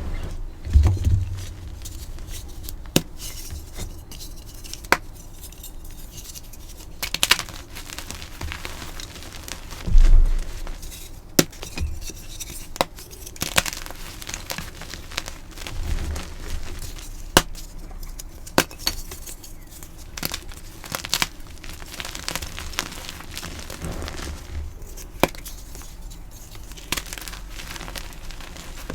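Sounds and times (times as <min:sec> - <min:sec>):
heavy low thump: 0:00.0 - 0:01.9, 0:09.9 - 0:10.9.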